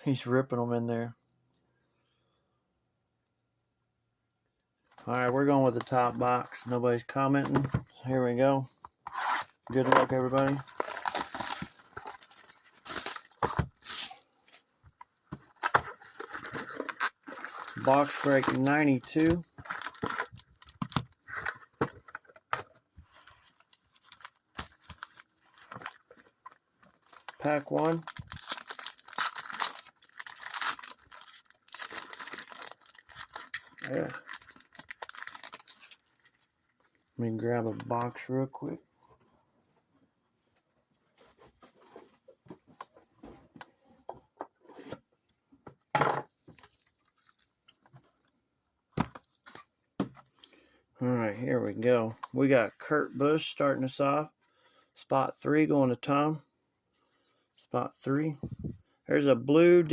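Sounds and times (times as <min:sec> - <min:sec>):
box of cards being opened: 0:09.0 - 0:14.7, 0:15.4 - 0:36.4.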